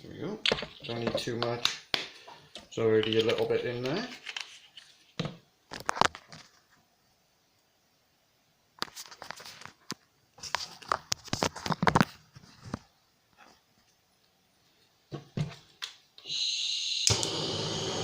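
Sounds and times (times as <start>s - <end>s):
crinkling: 8.8s - 14.0s.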